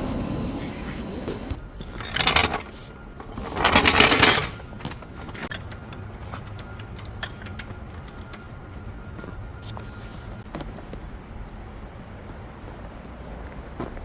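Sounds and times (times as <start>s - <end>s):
metal hand tools rattling: 1.3s - 8.5s.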